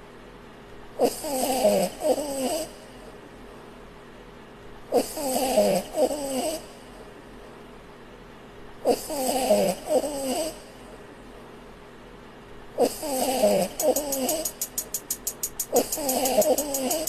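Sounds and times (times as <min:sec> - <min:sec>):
puppy snoring: 0:01.0 - 0:02.7, 0:04.9 - 0:06.6, 0:08.9 - 0:10.6, 0:12.8 - 0:14.7, 0:15.6 - 0:17.0.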